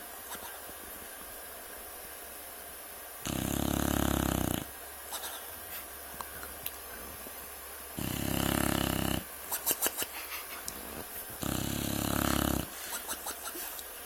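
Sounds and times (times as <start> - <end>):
dog snoring: 3.2 - 4.7, 8.0 - 9.3, 10.8 - 12.8.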